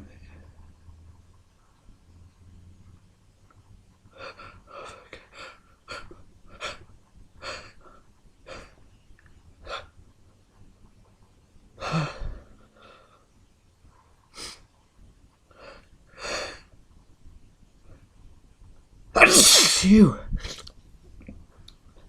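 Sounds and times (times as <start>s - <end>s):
person gasping breaths: 11.8s - 13.2s
loud sneeze: 19.2s - 20.6s.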